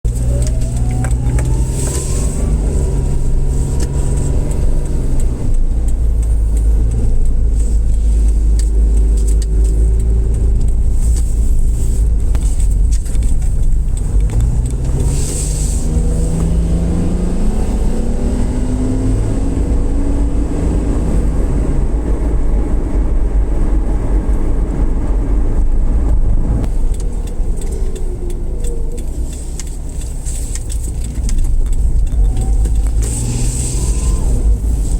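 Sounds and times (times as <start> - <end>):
car engine and road rumble: 0.0 - 34.9.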